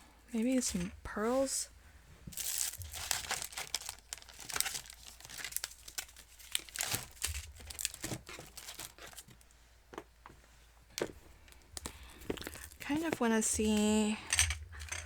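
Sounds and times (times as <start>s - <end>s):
plastic packets crinkling: 2.3s - 9.6s, 11.0s - 15.0s.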